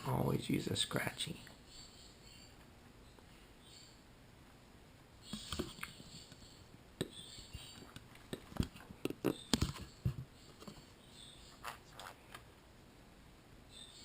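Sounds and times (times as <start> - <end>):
parrot chirping and chattering: 1.4 - 4.1, 5.2 - 12.2.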